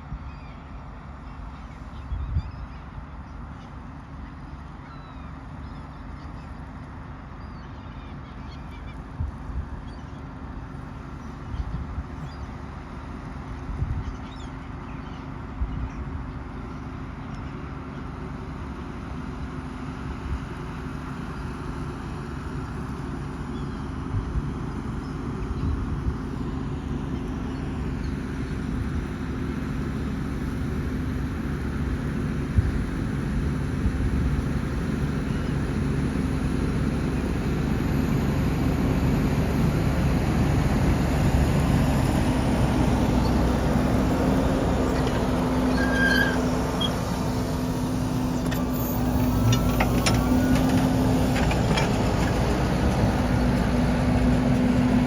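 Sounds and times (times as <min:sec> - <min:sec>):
tractor engine under load: 0:16.6 - 0:55.0.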